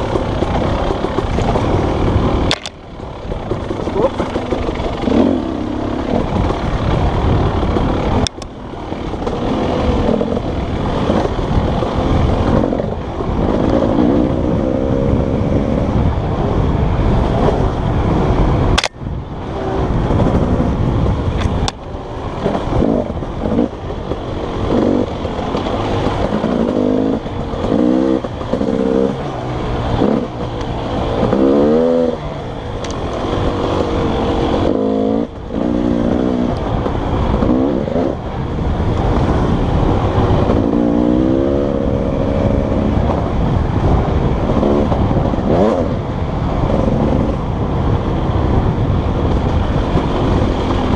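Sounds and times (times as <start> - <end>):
dirt bike engine revving: 0.0 - 47.4.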